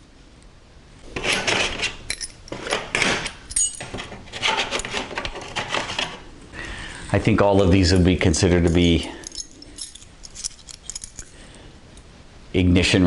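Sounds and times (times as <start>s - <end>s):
steel wrenches clinking: 2.1s - 5.0s, 7.9s - 11.4s.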